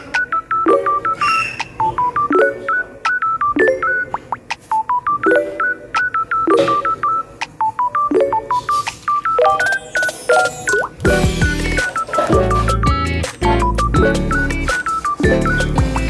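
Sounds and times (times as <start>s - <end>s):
high beep-like electronic notes: 0.0s - 16.0s
beat and bass: 11.0s - 16.0s.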